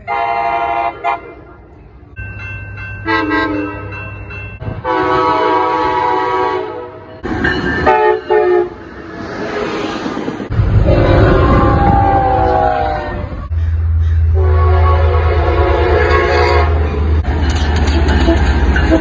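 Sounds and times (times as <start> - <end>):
locomotive air horn chord: 0.0 - 1.4, 3.0 - 3.9, 4.8 - 7.1, 7.8 - 8.8, 14.3 - 17.0.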